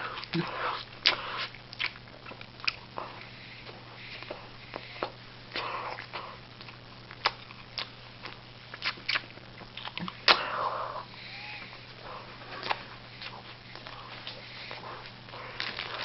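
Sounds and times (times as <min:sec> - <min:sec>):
low electrical hum: 0:00.0 - 0:16.0
person chewing with wet mouth smacks: 0:00.1 - 0:10.5, 0:12.4 - 0:16.0
short noisy breaths: 0:10.3 - 0:16.0.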